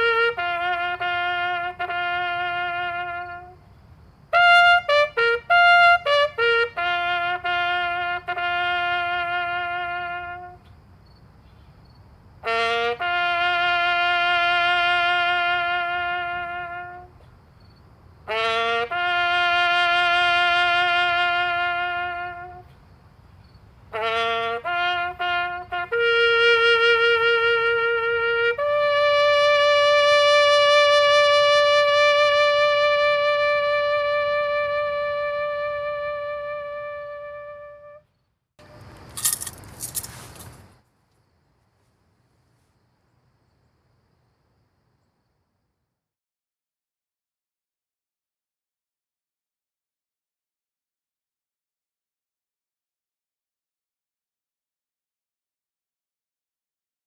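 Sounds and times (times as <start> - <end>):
trumpet playing bugle call: 0.0 - 3.7, 4.3 - 10.7, 12.4 - 17.3, 18.2 - 22.8, 23.9 - 40.6.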